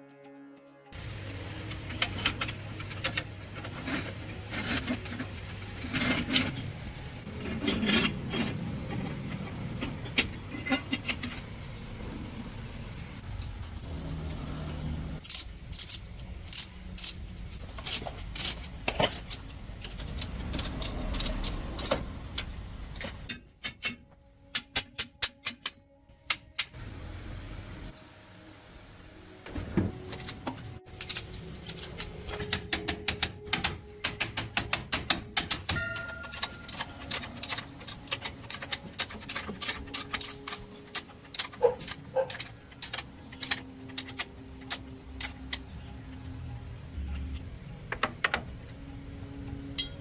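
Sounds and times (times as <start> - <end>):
low steady hum: 0.0 - 24.7
metal tools clinking and rattling: 1.8 - 11.6, 14.4 - 22.0, 30.0 - 34.3, 35.2 - 46.1.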